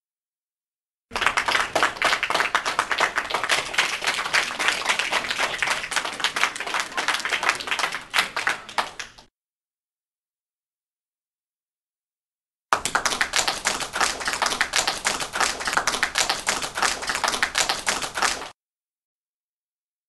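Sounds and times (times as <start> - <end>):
crowd clapping: 1.1 - 9.3, 12.7 - 18.6.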